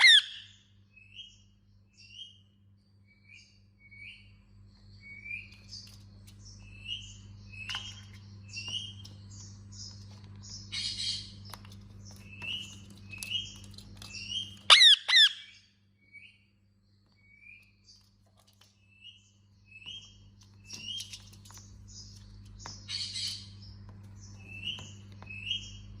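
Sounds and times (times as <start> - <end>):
parakeet squawk: 0.0 - 0.6, 14.7 - 15.6
parakeet chirping: 0.0 - 1.3, 5.0 - 16.4, 18.9 - 26.0
shrill bird calls: 0.0 - 11.5, 12.2 - 16.5.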